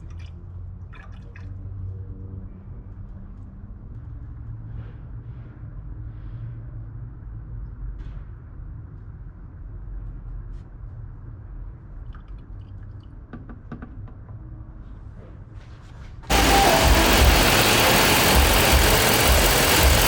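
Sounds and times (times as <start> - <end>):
diesel engine idling: 16.3 - 20.0.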